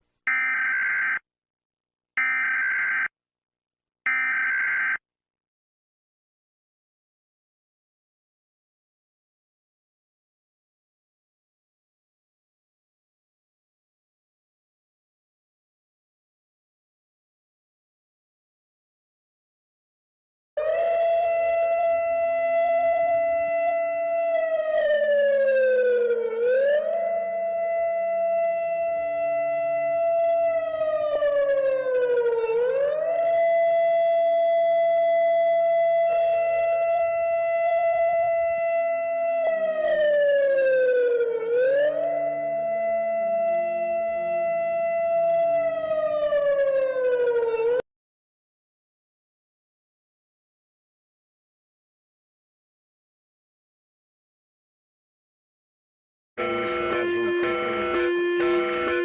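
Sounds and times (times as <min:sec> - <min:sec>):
alarm siren: 0:00.3 - 0:01.2, 0:02.2 - 0:03.1, 0:04.1 - 0:05.0, 0:20.6 - 0:47.8, 0:56.4 - 0:59.0.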